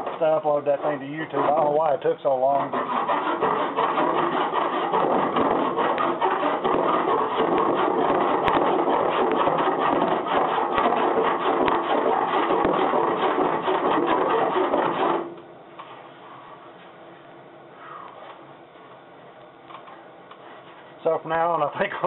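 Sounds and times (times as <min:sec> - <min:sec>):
file rasping on metal: 0:00.7 - 0:15.3.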